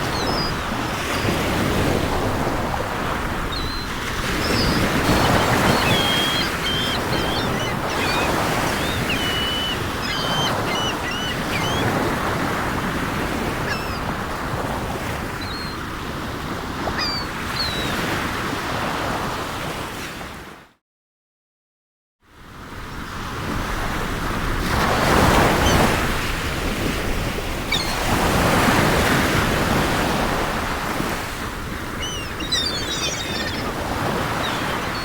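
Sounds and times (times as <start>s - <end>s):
seagulls calling: 0.0s - 15.8s, 16.8s - 18.2s, 27.6s - 29.1s, 29.8s - 35.0s
sea waves breaking: 0.0s - 18.9s, 24.5s - 35.0s.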